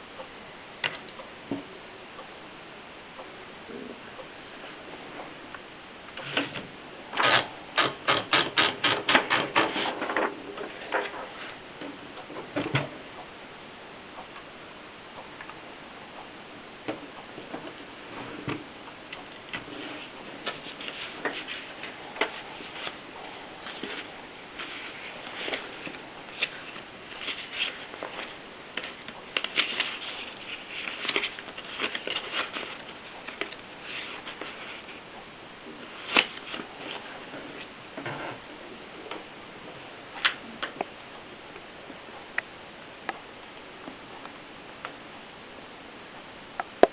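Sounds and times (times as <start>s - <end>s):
typewriter keys striking: 7.2s - 9.7s.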